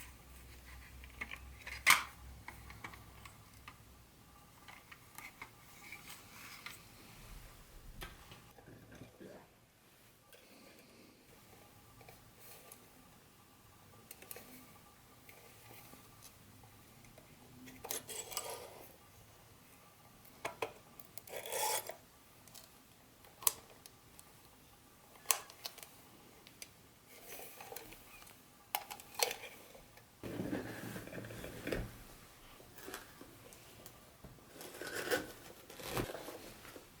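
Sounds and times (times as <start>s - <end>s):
rubbing and scraping of packaging: 30.2s - 32.0s, 34.4s - 36.9s.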